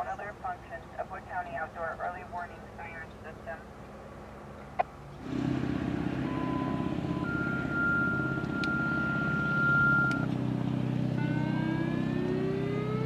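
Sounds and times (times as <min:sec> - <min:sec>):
radio activation tones: 0:00.0 - 0:03.7, 0:06.2 - 0:10.3
low hum: 0:00.0 - 0:13.0
electronic siren rising wail: 0:05.8 - 0:10.4, 0:11.0 - 0:13.0.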